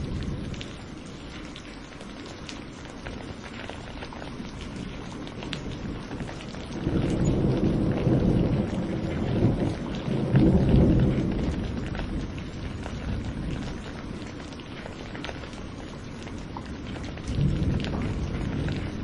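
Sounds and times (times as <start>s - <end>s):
rolling thunder: 0.0s - 0.7s, 5.7s - 14.4s, 16.4s - 19.0s
steady rain: 0.0s - 19.0s.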